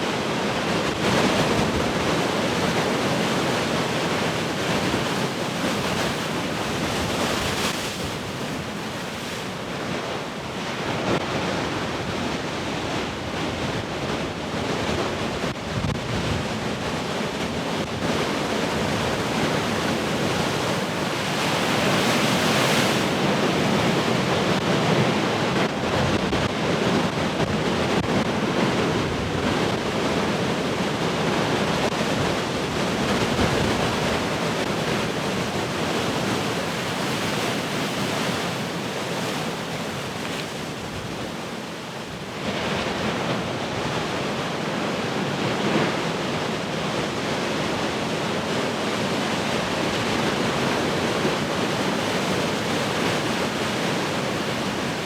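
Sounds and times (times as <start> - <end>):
ocean waves breaking: 0.1 - 14.2, 16.6 - 55.0
wind on microphone: 0.4 - 55.0.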